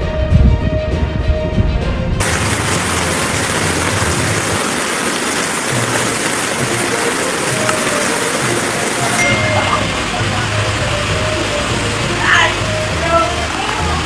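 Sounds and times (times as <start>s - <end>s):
background music: 0.0s - 14.0s
loud hiss of water: 2.2s - 14.0s.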